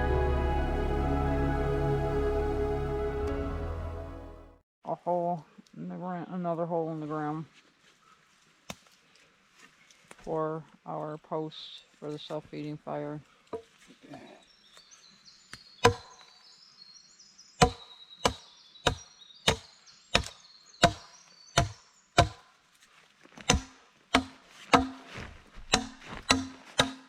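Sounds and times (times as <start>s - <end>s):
hand tool chopping: 15.8s - 16.1s, 17.6s - 22.4s, 23.4s - 27.0s.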